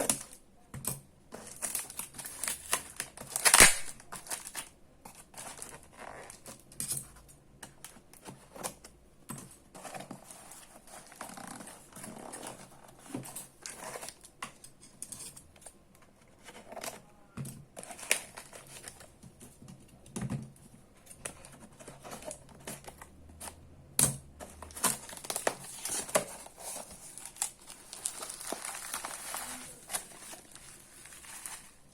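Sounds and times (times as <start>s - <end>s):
packaging crinkling and tearing: 1.4s - 6.6s, 24.6s - 31.9s.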